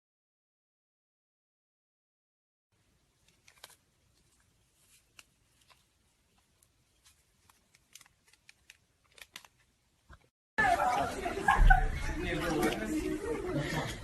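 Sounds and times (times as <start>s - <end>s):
sticky clicks of slime: 7.4s - 9.7s.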